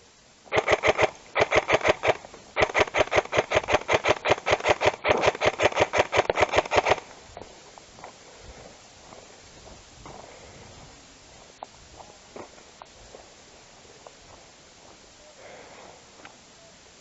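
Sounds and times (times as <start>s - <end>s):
airsoft rifle bursts: 0.5s - 7.2s.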